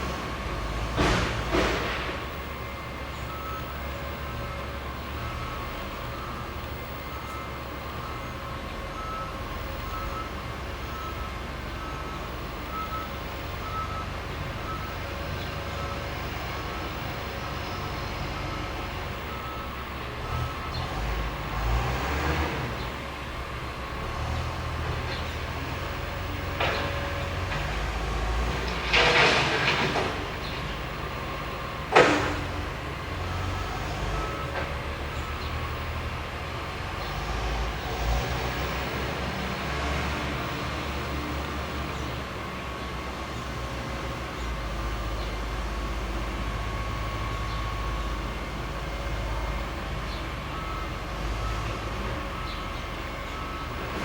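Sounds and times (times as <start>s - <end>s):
low engine rumble: 0.0s - 54.0s
reversing alarm beeping: 1.5s - 23.0s, 32.0s - 39.5s, 44.9s - 54.0s.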